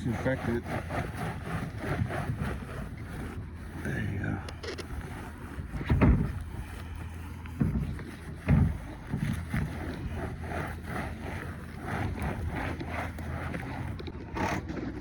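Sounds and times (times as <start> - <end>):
rag scrubbing metal panel: 0.0 - 14.1
wind on microphone: 0.0 - 14.5
thumps: 4.5 - 14.1.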